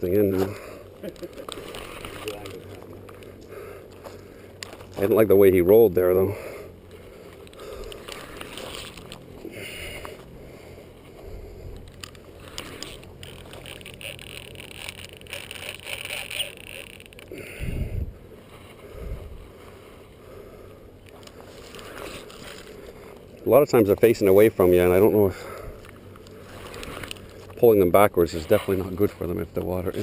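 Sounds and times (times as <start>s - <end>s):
water splashing and sloshing: 25.4s - 27.6s.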